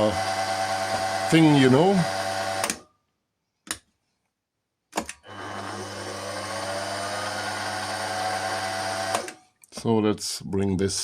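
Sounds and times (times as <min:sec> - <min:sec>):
mill spindle motor whine: 0:00.0 - 0:02.8, 0:05.3 - 0:09.4.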